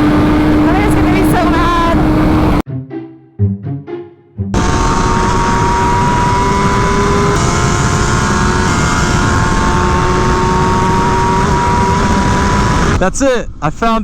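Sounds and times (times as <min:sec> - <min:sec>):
motorcycle engine: 0:00.0 - 0:02.6, 0:04.6 - 0:13.0.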